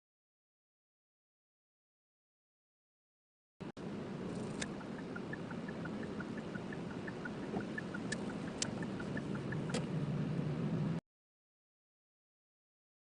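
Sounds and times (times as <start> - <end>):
low hum: 3.7 - 11.0
road and tyre rumble: 3.7 - 11.0.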